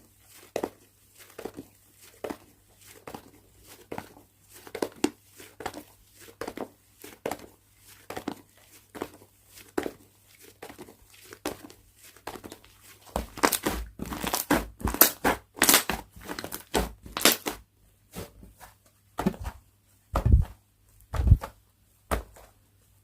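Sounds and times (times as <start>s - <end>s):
slime squelching and popping: 13.2s - 17.6s.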